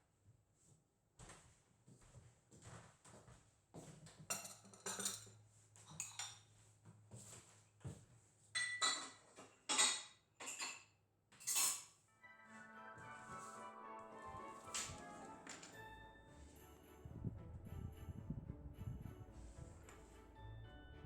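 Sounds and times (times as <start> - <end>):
dishes and cutlery clinking: 4.3 - 6.5, 8.6 - 12.0, 14.7 - 15.8
soft music: 12.1 - 21.0.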